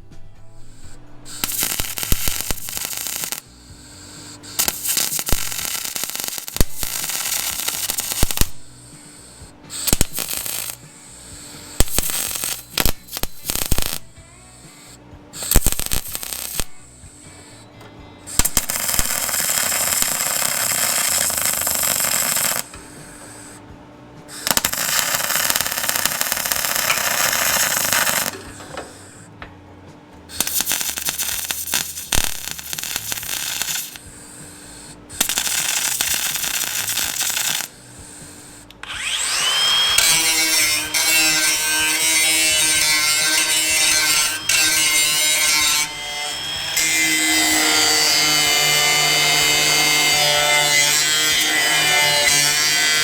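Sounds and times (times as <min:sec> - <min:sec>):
power tools on sheet metal: 0:00.7 - 0:23.7, 0:24.3 - 0:29.3, 0:30.3 - 0:53.0
tool spinning up with whine: 0:24.3 - 0:29.2, 0:35.0 - 0:41.9, 0:42.7 - 0:48.0.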